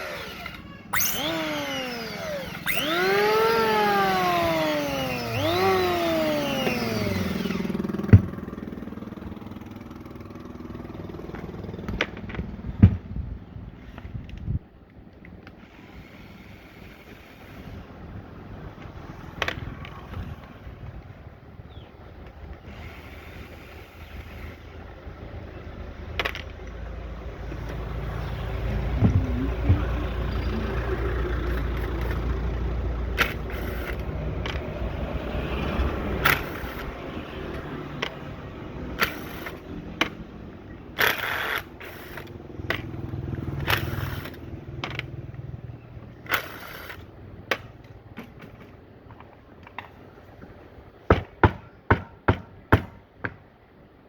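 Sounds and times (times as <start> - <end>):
sharp knocks and clicks: 8.0 - 8.6.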